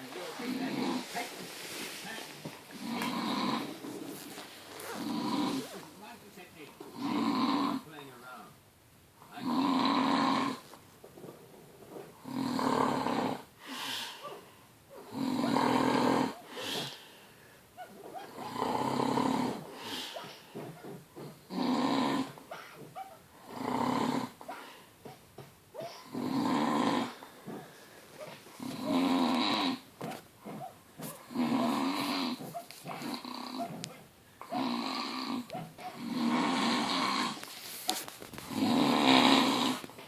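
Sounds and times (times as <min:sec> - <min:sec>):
loud snoring: 0:00.4 - 0:01.2, 0:02.7 - 0:05.9, 0:06.8 - 0:07.9, 0:09.4 - 0:10.7, 0:12.2 - 0:13.5, 0:14.9 - 0:17.1, 0:18.2 - 0:24.7, 0:25.8 - 0:27.9, 0:28.6 - 0:29.9, 0:31.2 - 0:37.4, 0:38.4 - 0:40.0
snuffling breaths: 0:12.0 - 0:40.0.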